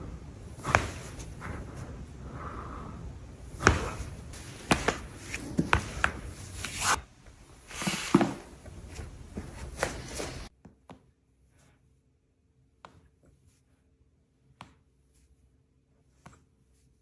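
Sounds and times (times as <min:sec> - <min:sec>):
steady background hiss: 0:00.0 - 0:10.5.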